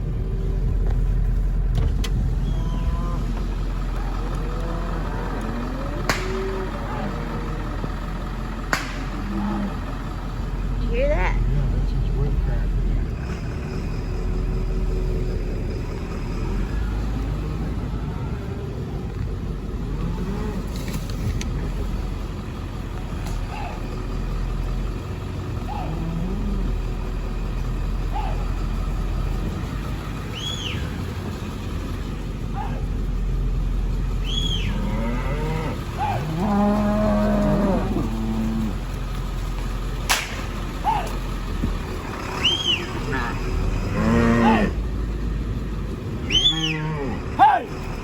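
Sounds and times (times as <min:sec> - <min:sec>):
cow mooing: 0:02.4 - 0:10.1, 0:19.8 - 0:20.9, 0:25.7 - 0:27.2, 0:34.3 - 0:39.0, 0:43.1 - 0:44.9, 0:46.3 - 0:47.4
sharp clicks: 0:39.1 - 0:41.2.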